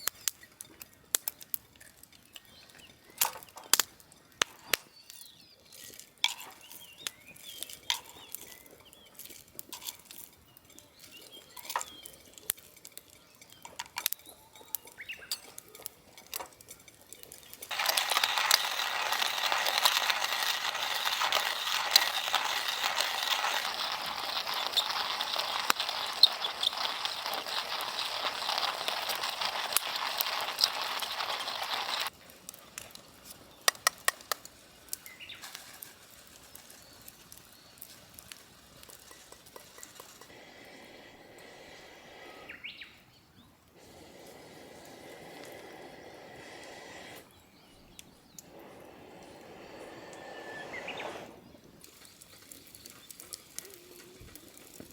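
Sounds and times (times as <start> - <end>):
wood fire crackling: 0.0 - 54.9
loud rushing hiss: 40.3 - 42.8, 43.8 - 47.3, 48.4 - 51.4.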